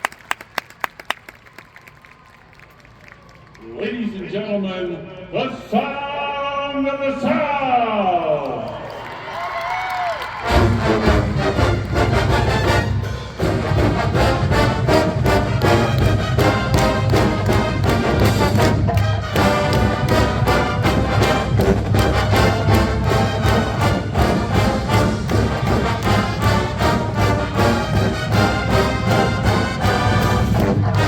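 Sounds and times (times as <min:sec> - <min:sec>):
marching band brass: 0:10.2 - 0:31.0
drums keeping a beat: 0:10.5 - 0:31.0.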